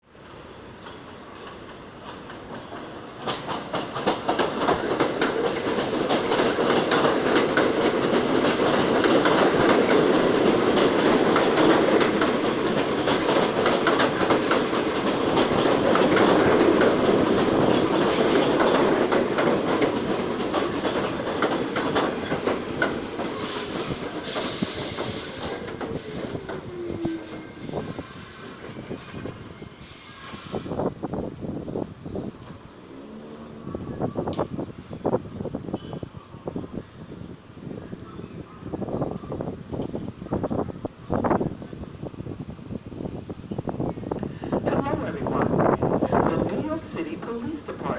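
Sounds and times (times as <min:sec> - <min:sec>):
falling whine of train: 0:00.0 - 0:47.9
train wheels clattering over rail joints: 0:00.8 - 0:30.7
short hiss burst: 0:23.3 - 0:26.4, 0:27.5 - 0:30.9.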